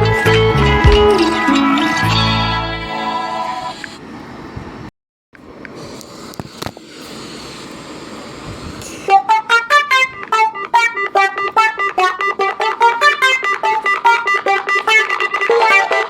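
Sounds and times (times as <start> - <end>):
plucked guitar-like ringtone: 0.0 - 3.0, 9.8 - 16.0
faint hiss: 5.6 - 9.1.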